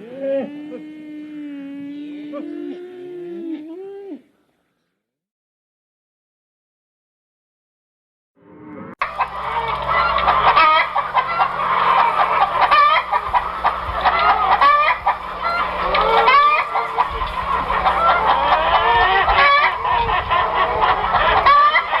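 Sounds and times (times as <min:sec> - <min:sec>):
flock of birds clucking and honking: 0:09.0 - 0:22.0
steady low hum: 0:09.0 - 0:22.0.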